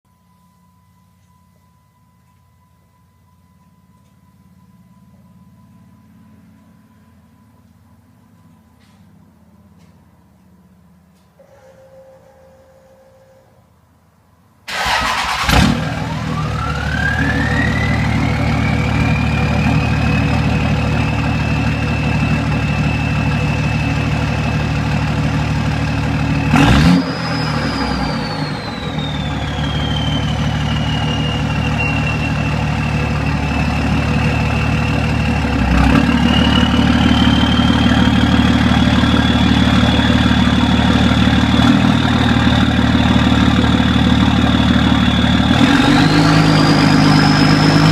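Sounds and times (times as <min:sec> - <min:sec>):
diesel engine starting and idling: 0:14.7 - 0:47.9
turbo whistling: 0:16.3 - 0:47.9.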